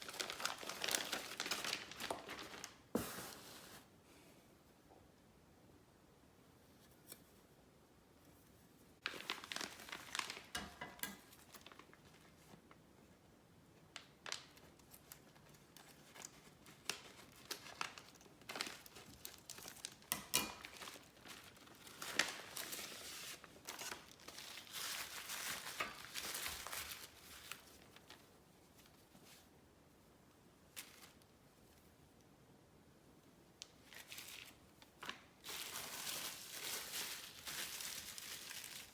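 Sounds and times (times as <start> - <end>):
packaging crinkling and tearing: 0.0 - 2.9, 9.0 - 12.8, 14.0 - 28.3, 33.6 - 38.9.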